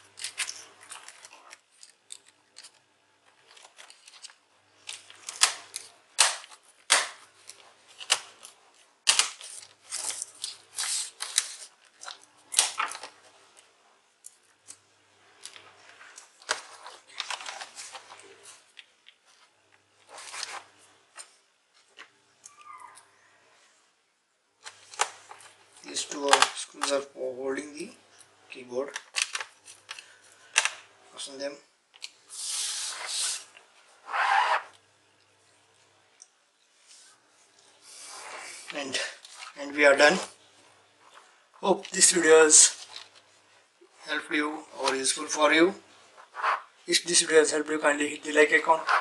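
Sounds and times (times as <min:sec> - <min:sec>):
short rustling scrapes: 0:37.8 - 0:40.3.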